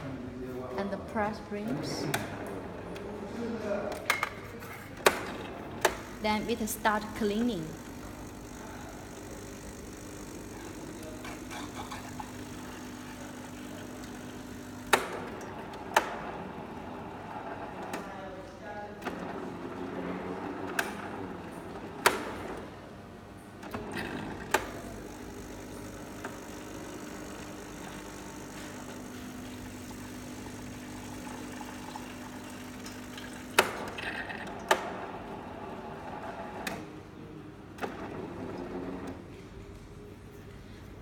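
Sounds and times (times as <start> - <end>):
coffee machine humming: 0.0 - 41.0
coffee machine clicks: 3.9 - 17.0, 21.8 - 22.7, 23.6 - 35.0.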